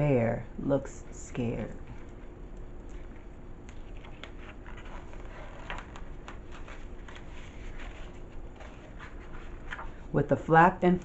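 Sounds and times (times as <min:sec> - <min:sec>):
book pages rustling: 0:01.9 - 0:11.0
small clicks of pages: 0:02.0 - 0:08.0.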